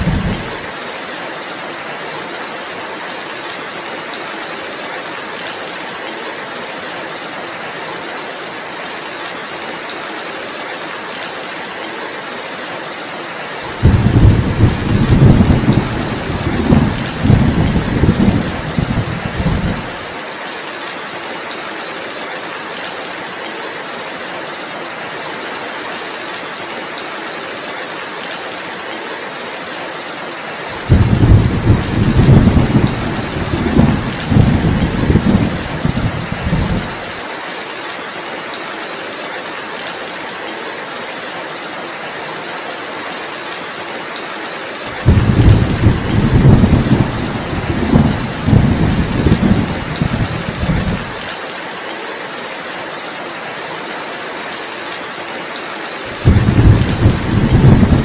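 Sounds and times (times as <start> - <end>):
rolling thunder: 0.0 - 0.6, 13.8 - 20.0, 30.9 - 37.0, 45.0 - 51.2, 56.2 - 58.0
heavy rain hissing: 0.0 - 1.8, 12.2 - 20.7, 29.5 - 37.7, 43.6 - 51.6, 56.0 - 58.0.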